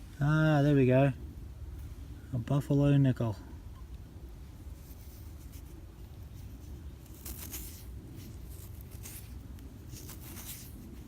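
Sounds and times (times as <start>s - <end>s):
low steady rumble: 0.0s - 11.0s
soft scratchy rustling: 4.4s - 11.0s.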